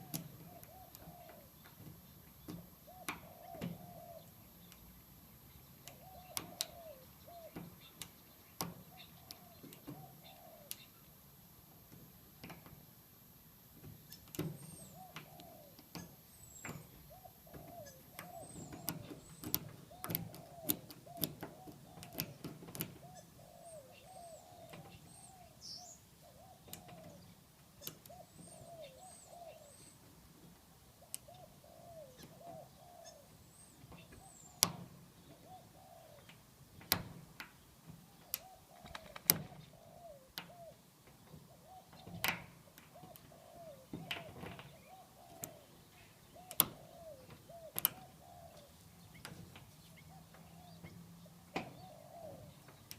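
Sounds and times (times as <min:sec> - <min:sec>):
birds calling: 0:00.0 - 0:11.2, 0:13.8 - 0:52.9.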